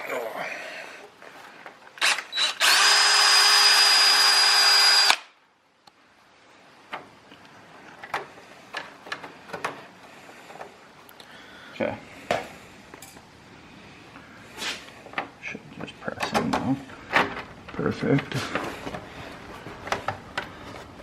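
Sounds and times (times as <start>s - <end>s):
power drill running: 2.0s - 5.2s.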